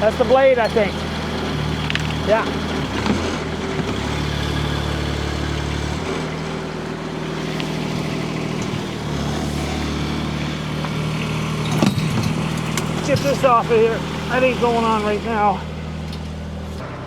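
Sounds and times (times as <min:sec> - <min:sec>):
mini excavator diesel engine running: 0:00.0 - 0:17.0.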